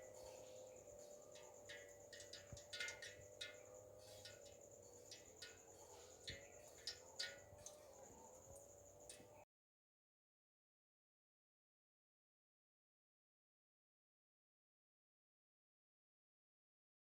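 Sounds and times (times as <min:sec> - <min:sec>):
faint irregular clicks: 0:00.0 - 0:09.4
steady low hum: 0:00.0 - 0:09.4.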